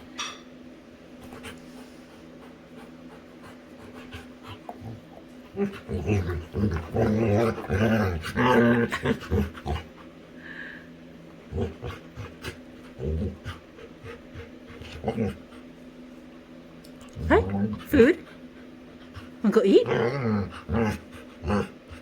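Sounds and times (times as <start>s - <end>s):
dog panting: 1.2s - 7.6s, 11.7s - 16.1s, 17.3s - 19.9s
dog grunting: 2.9s - 10.1s, 11.4s - 15.7s, 17.0s - 22.0s
dog growling playfully: 3.4s - 10.2s, 11.4s - 15.7s, 17.0s - 22.0s.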